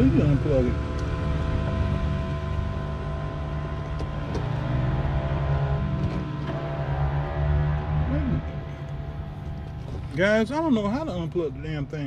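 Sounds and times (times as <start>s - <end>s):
low droning hum: 0.0s - 12.0s.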